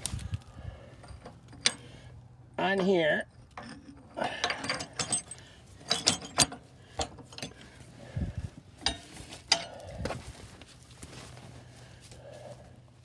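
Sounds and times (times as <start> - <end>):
metal clanks and clinks: 1.0 - 2.0, 2.6 - 7.8, 8.8 - 9.8.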